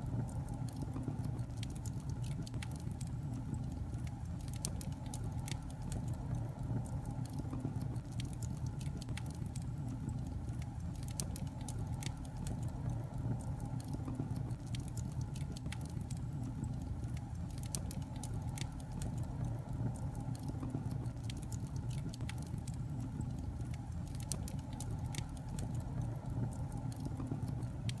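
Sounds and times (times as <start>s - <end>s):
wood fire crackling: 0.0s - 28.0s.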